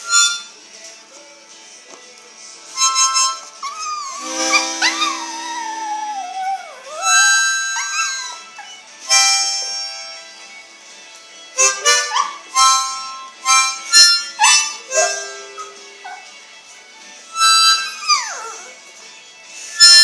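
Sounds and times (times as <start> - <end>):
harmonica chords: 0.0 - 0.6, 2.6 - 10.6, 11.4 - 16.4, 17.1 - 18.6, 19.6 - 20.0
dog howling: 4.9 - 7.1.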